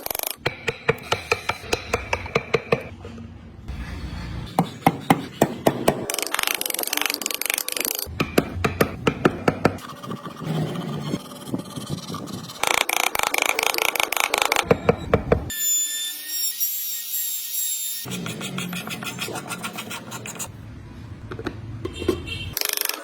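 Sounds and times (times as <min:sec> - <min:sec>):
carving tool tapping wood: 0:00.4 - 0:02.9.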